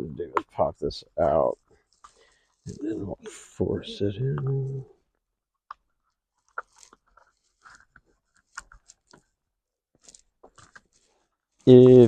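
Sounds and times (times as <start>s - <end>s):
small clicks and scrapes: 1.6s - 2.8s, 5.7s - 12.0s.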